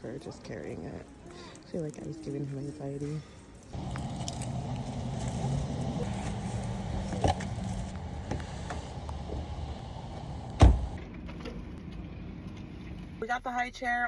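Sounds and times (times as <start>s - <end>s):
car engine humming: 3.7s - 13.2s
loud thump: 10.6s - 11.0s.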